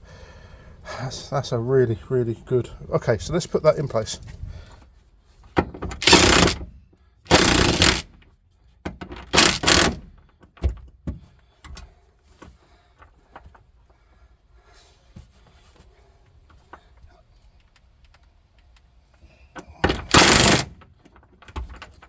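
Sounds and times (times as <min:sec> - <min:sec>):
loud scraping rustles: 0:06.0 - 0:06.6, 0:07.3 - 0:08.0, 0:09.3 - 0:10.0.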